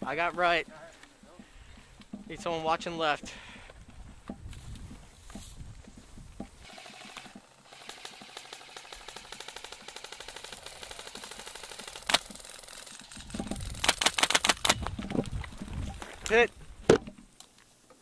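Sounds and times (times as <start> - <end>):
airsoft guns firing: 6.6 - 14.8
sharp crack: 7.0 - 15.4.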